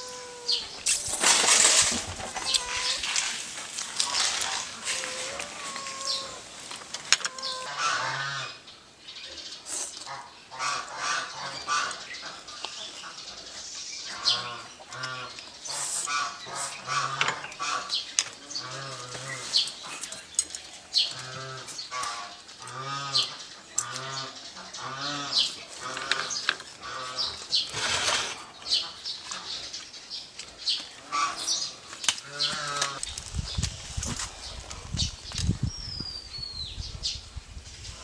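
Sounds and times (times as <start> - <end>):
poultry calling: 0.0 - 8.7, 31.0 - 33.0.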